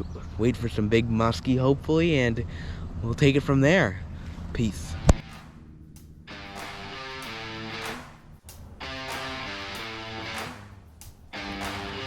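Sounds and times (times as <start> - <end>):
strummed guitar chords: 6.3 - 8.2, 8.8 - 10.7, 11.3 - 12.0.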